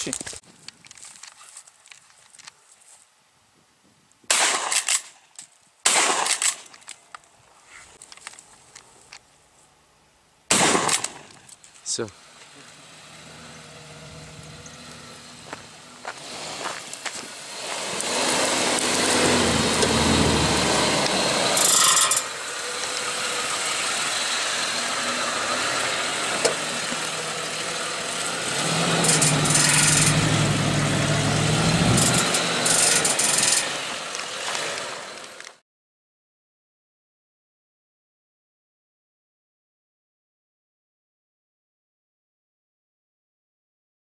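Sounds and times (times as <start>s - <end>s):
road and wind noise: 0.0s - 35.6s
car engine revving: 11.9s - 35.4s.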